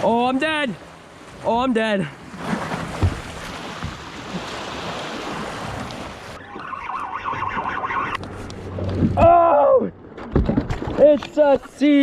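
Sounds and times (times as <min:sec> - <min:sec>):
water splashing: 0:00.0 - 0:12.0
wind: 0:00.0 - 0:12.0
low knocks: 0:02.8 - 0:04.1.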